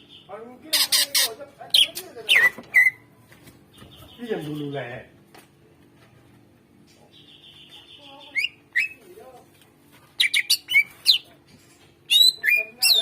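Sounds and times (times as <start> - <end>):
bird singing: 7.1 - 9.0, 12.1 - 13.0.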